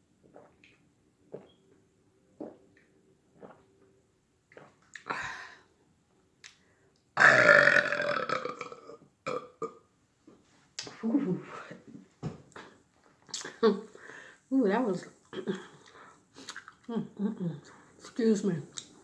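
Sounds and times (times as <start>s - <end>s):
long loud burp: 7.2s - 9.8s.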